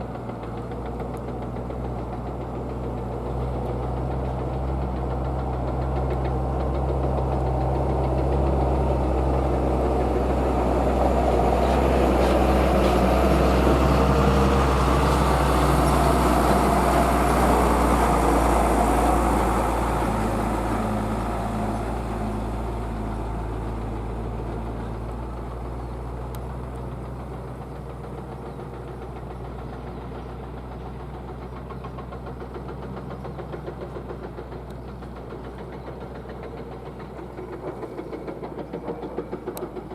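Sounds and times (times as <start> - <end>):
excavator diesel engine running: 0.0 - 39.9.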